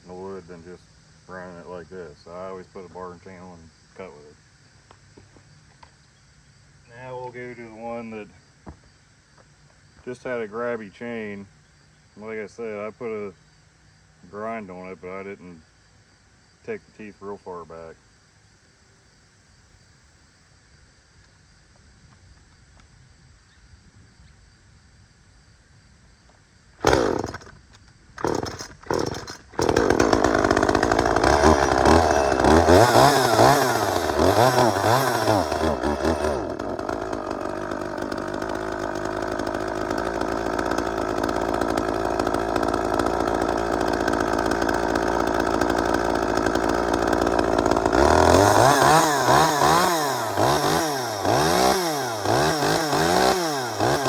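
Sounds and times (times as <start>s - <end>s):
chainsaw engine running: 26.8s - 27.6s, 28.2s - 54.0s
chainsaw starter cord pulls: 26.8s - 54.0s.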